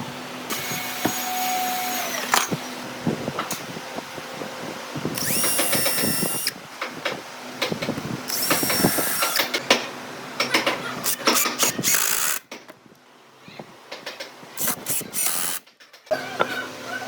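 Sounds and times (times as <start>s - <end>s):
power tool running: 5.1s - 6.6s, 8.3s - 9.6s, 14.6s - 15.7s
sharp clicks and knocks: 13.9s - 16.1s.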